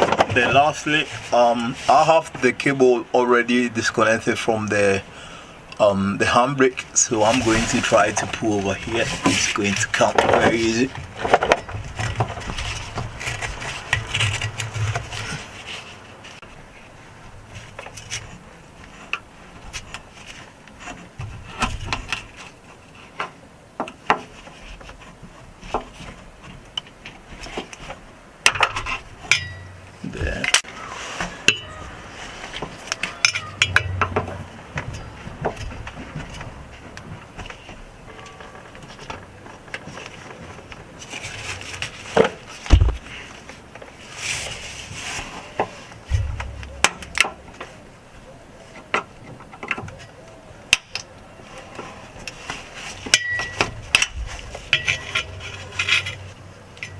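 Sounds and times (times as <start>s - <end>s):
cable rubbing and scraping: 6.3s - 16.4s
metal clicks and scraping: 6.8s - 16.5s, 26.7s - 47.9s, 48.7s - 56.9s
sharp clicks and knocks: 32.5s - 39.8s, 46.1s - 47.8s
sharp knocks: 46.1s - 47.5s.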